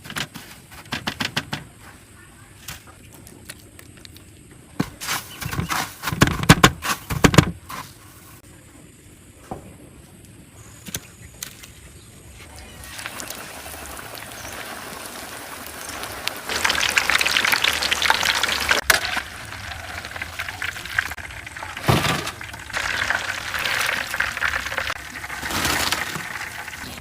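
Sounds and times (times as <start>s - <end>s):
chicken sizzling in hot oil: 12.6s - 27.0s.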